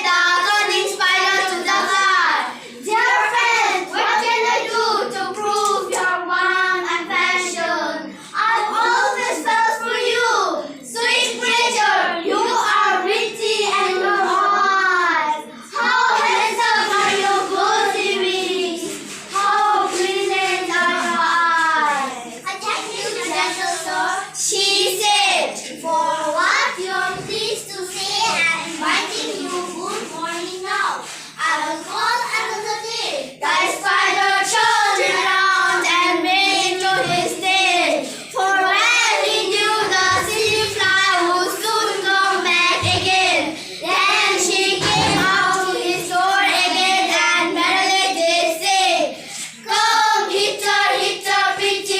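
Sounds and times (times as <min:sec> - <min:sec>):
children chanting a poem: 0:00.0 - 0:51.9
children breathing: 0:02.5 - 0:02.8, 0:43.5 - 0:43.9, 0:49.1 - 0:49.6.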